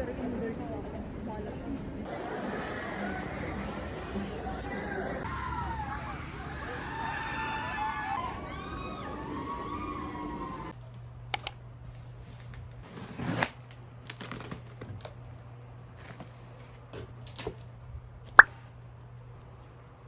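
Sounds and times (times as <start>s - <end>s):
sharp click: 11.4s - 11.6s.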